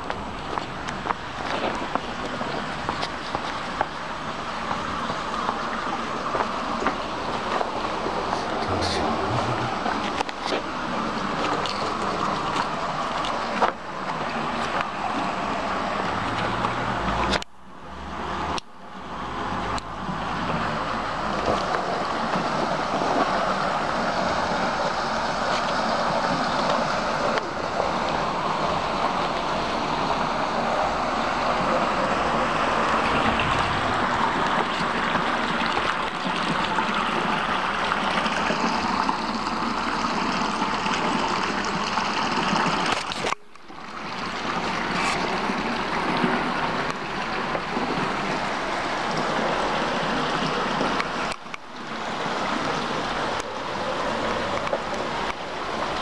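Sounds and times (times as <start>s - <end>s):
stream water rushing: 0.0s - 56.0s.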